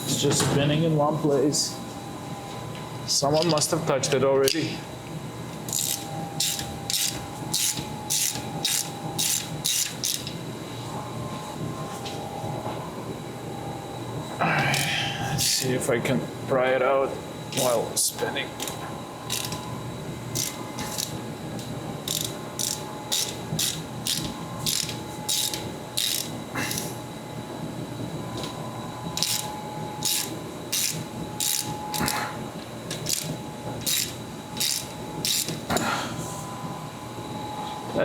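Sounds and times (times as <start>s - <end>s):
hand ratchet clicking: 5.7s - 10.4s, 19.3s - 19.6s, 20.4s - 21.2s, 22.1s - 26.9s, 29.2s - 32.2s, 32.9s - 35.6s.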